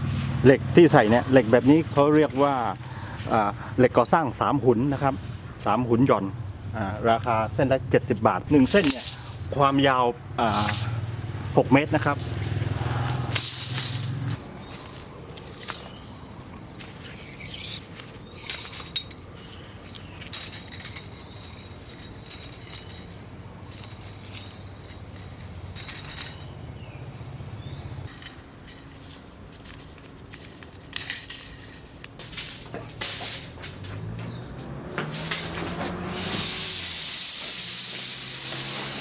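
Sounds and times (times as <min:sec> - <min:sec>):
metallic clinks: 0:08.6 - 0:09.5, 0:13.2 - 0:14.7, 0:17.2 - 0:39.0.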